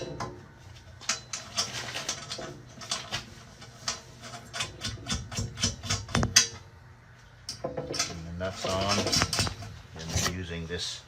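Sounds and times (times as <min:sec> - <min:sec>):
metal parts clinking and knocking: 0:07.4 - 0:09.8.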